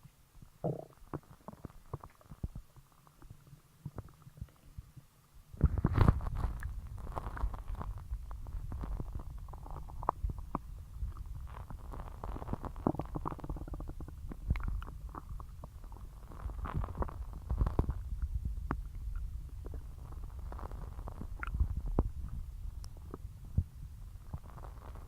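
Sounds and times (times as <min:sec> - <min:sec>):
stomach gurgling: 0:00.0 - 0:25.0.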